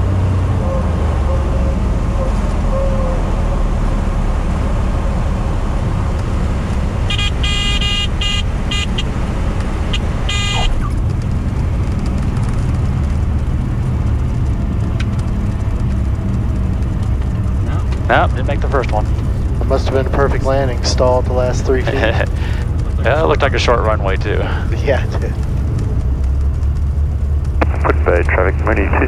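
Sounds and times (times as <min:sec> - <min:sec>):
airplane engine and propeller drone: 0:00.0 - 0:29.0
stall warning horn bursts: 0:07.1 - 0:09.1, 0:10.3 - 0:10.8.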